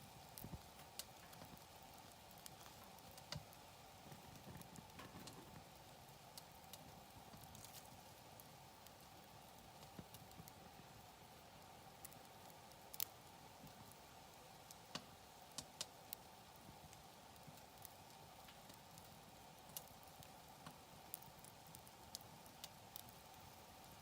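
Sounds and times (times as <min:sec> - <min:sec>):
campfire crackling: 0:00.0 - 0:24.0
sharp pops and snaps: 0:00.3 - 0:05.7, 0:12.0 - 0:14.0, 0:14.7 - 0:16.3.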